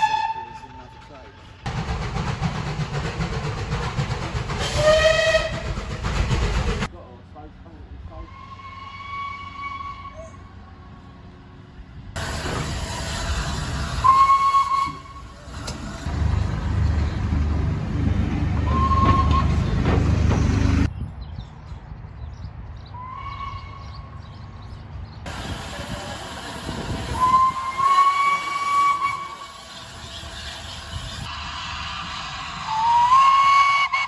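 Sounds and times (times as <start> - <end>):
steam locomotive whistle blasts: 0.0 - 0.7, 4.6 - 5.8, 8.3 - 10.4, 12.5 - 15.5, 18.6 - 19.6, 25.3 - 31.2, 32.6 - 34.0
train rumbling: 0.0 - 20.9, 23.3 - 34.0.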